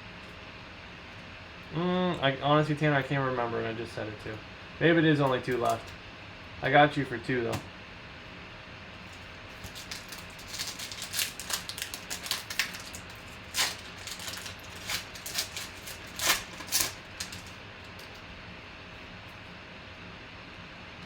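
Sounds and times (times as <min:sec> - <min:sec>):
trading cards clicking and rustling: 0:05.2 - 0:06.0, 0:09.5 - 0:18.2.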